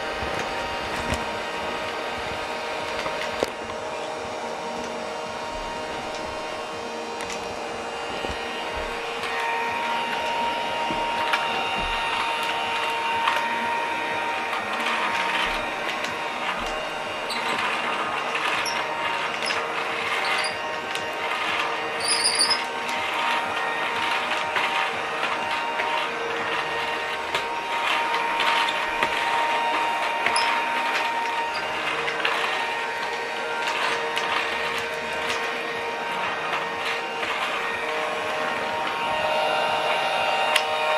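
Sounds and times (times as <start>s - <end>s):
toy vacuum motor whine: 0.0s - 40.9s
rattling and scraping: 14.2s - 40.8s.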